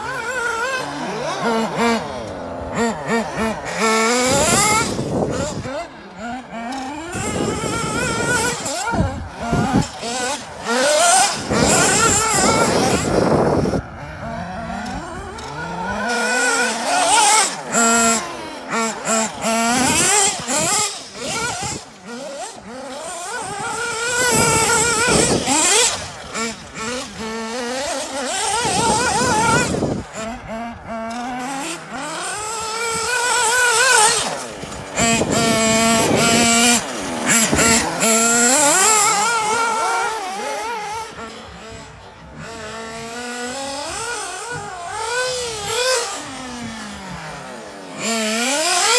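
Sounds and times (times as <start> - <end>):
rc car engine revving: 0.0 - 48.9.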